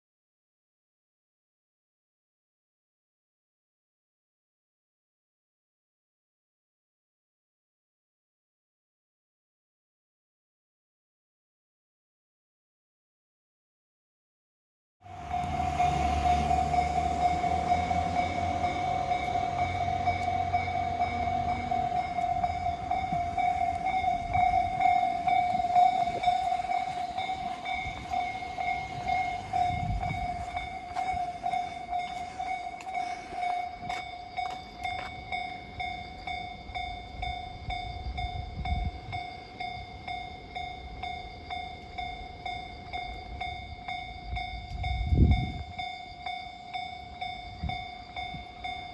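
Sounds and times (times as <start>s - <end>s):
crossing warning bell ringing: 15.0s - 48.9s
freight train rumbling: 15.0s - 48.9s.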